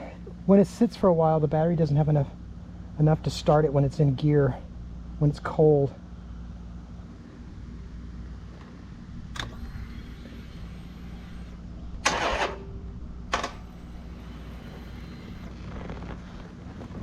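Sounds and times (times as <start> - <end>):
steady low hum: 0.0 - 17.0
starter clicking: 9.2 - 16.2
engine cranking briefly: 9.4 - 15.6.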